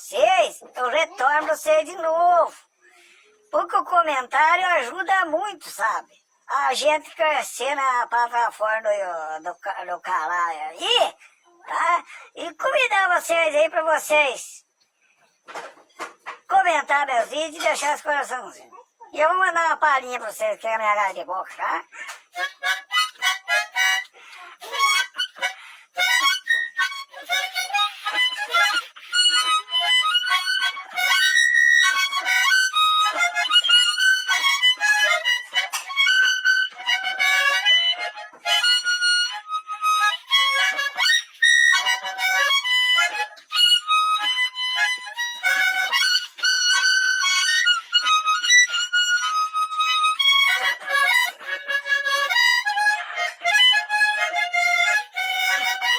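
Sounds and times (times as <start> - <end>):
solo harmonica: 21.6 - 55.9.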